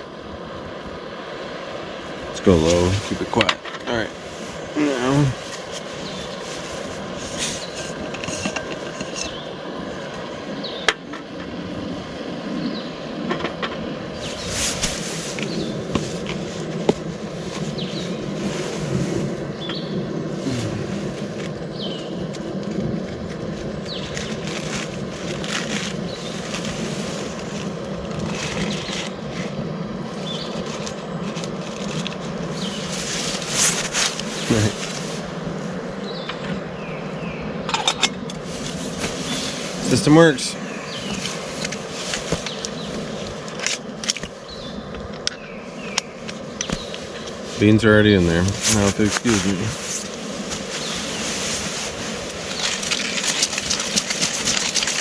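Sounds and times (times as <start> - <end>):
stove burner hissing: 0.8 - 11.5.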